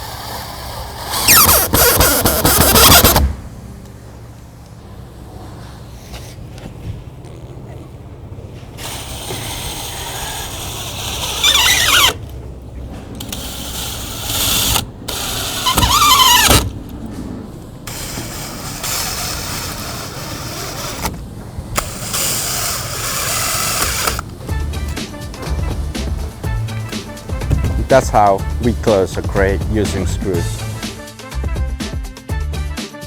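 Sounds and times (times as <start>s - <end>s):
power drill driving screws into wood: 0.0s - 3.3s, 8.8s - 12.2s, 13.2s - 16.8s, 17.9s - 21.2s, 21.8s - 31.0s.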